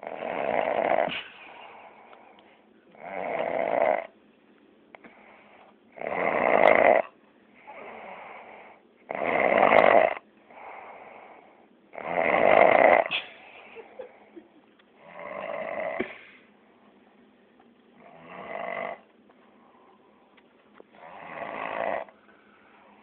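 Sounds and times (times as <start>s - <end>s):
pet snoring: 0.0s - 2.0s, 2.9s - 4.2s, 5.9s - 13.4s, 15.0s - 16.4s, 18.0s - 19.1s, 20.9s - 22.2s
soft breaths: 1.1s - 3.0s, 4.9s - 6.0s, 7.4s - 9.1s, 10.4s - 11.8s, 19.0s - 23.0s.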